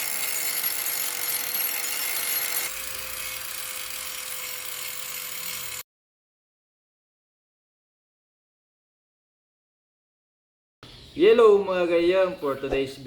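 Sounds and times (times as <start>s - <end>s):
power grinder grinding metal: 0.0s - 5.8s.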